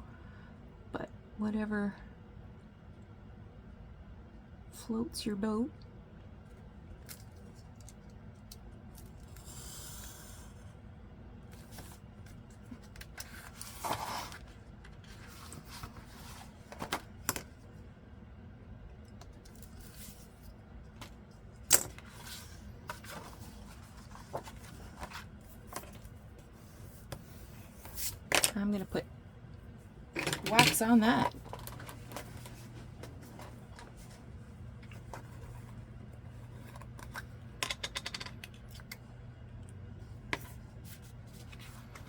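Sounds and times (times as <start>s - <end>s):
paper rustling: 22.1s - 26.0s.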